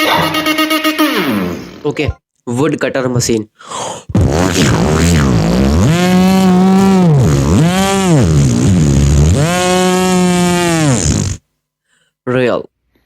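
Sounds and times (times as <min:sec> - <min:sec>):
beatboxer imitating a saw: 0:04.1 - 0:11.4.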